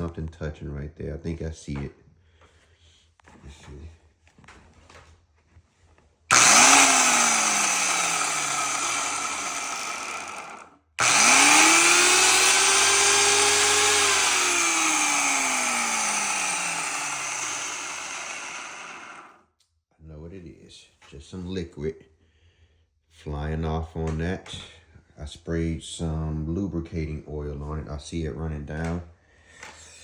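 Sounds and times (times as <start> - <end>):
electric motor whine: 6.3 - 19.4.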